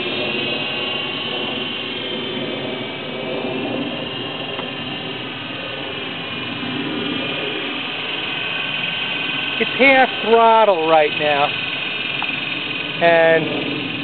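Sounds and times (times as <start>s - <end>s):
toy helicopter rotor whine: 0.0s - 14.0s.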